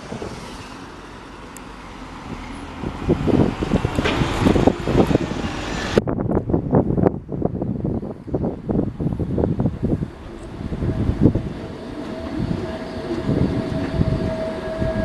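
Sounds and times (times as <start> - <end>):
passing vehicle rumble: 0.0 - 15.0
wind buffeting microphone: 2.2 - 15.0.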